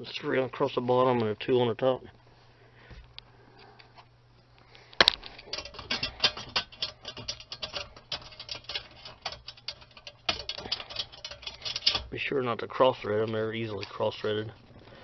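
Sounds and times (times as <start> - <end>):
hand ratchet clicking: 5.5 - 12.1.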